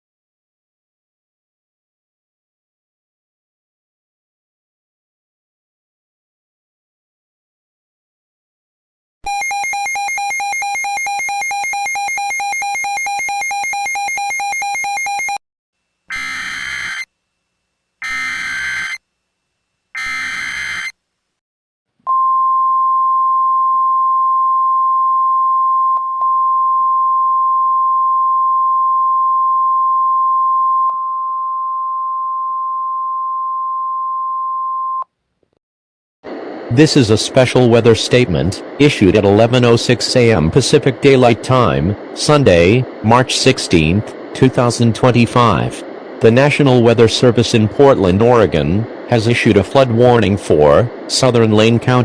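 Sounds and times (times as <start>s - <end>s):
steady alarm tone: 9.3s - 15.4s, 16.1s - 17.2s, 18.0s - 19.0s, 19.9s - 21.0s
buzzy pulsing tone: 16.1s - 17.1s, 18.0s - 19.0s, 19.9s - 20.9s
data burst noise: 16.1s - 17.1s, 18.0s - 19.0s, 19.9s - 21.0s.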